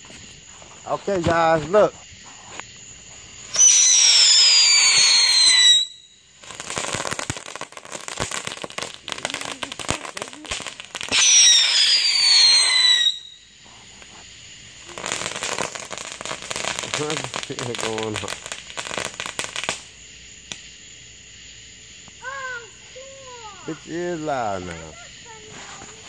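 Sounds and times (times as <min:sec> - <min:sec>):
crackling sparks: 0:00.0 - 0:20.8
firework whistles falling in pitch: 0:03.4 - 0:13.6.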